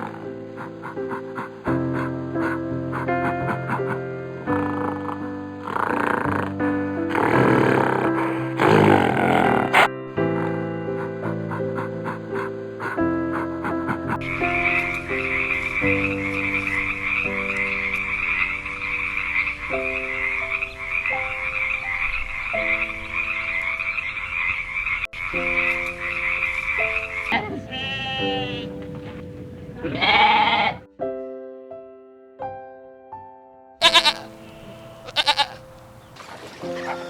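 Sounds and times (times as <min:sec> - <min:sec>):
short pitched animal calls: 0:00.0 - 0:10.6, 0:33.8 - 0:35.6
soft piano notes: 0:00.0 - 0:30.0
rasping animal chorus: 0:00.0 - 0:30.9, 0:33.8 - 0:37.0.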